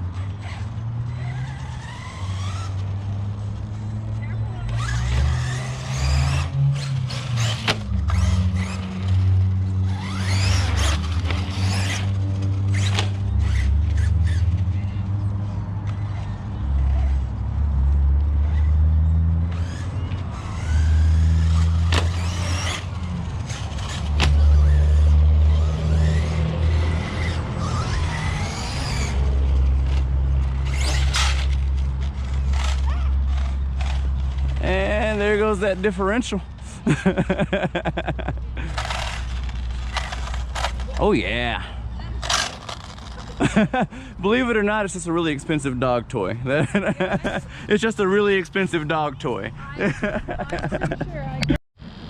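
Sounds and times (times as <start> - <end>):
electric motor whining: 4.7 - 14.7, 19.4 - 35.2.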